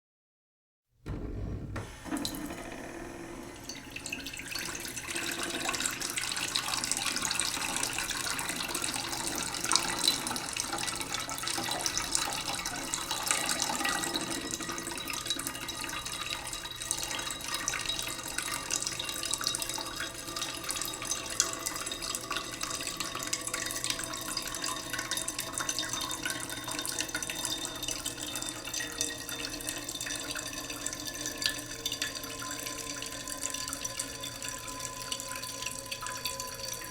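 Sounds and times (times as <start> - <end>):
tap water running into pot: 2.1 - 2.8, 3.4 - 36.9.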